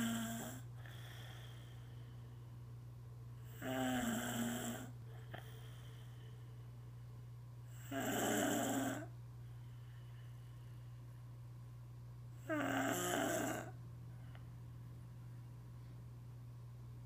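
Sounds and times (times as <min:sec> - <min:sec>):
person snoring: 0:00.0 - 0:01.6, 0:03.4 - 0:05.8, 0:07.7 - 0:09.1, 0:12.4 - 0:13.8
steady low hum: 0:00.0 - 0:17.0.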